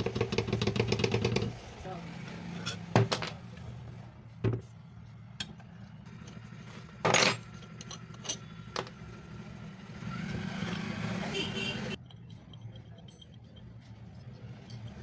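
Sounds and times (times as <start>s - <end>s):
hand tools clinking and knocking: 6.2s - 9.0s, 12.0s - 15.0s.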